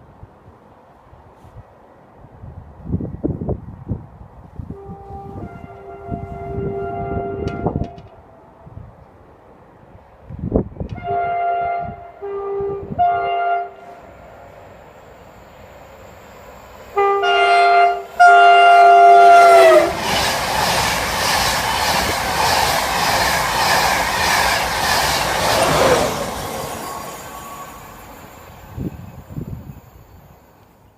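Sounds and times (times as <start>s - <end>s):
two-tone train horn blasts: 4.6s - 8.2s, 10.9s - 14.2s, 16.9s - 20.0s
train rushing past: 4.7s - 30.9s
rhythmic wheel clatter on rails: 19.4s - 30.7s.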